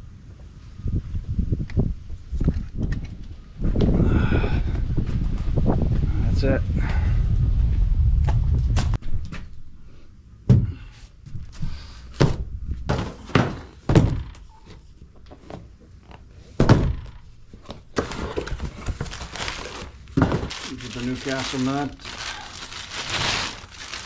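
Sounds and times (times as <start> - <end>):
rustling handling noise: 17.4 - 24.0.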